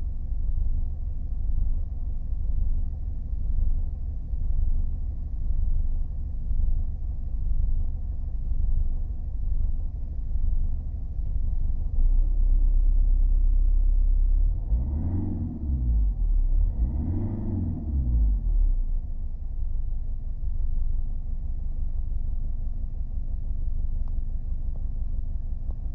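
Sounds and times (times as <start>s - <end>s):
diesel engine idling and revving: 0.0s - 25.9s.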